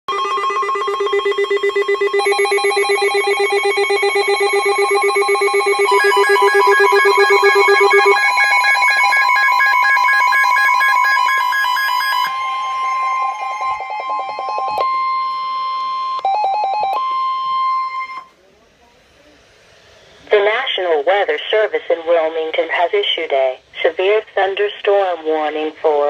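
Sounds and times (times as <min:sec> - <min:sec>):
weather radio alarms beeping: 0:00.1 - 0:18.3.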